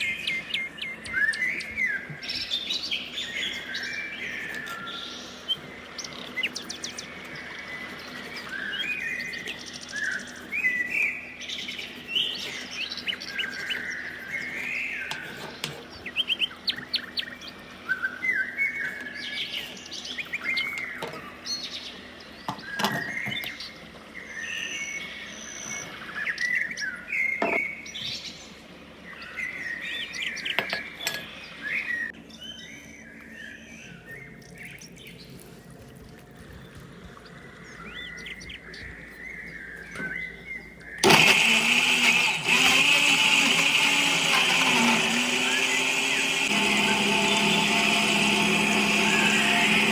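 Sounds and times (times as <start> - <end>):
small birds chirping: 0.0 - 49.9
electric blender running: 41.0 - 49.9.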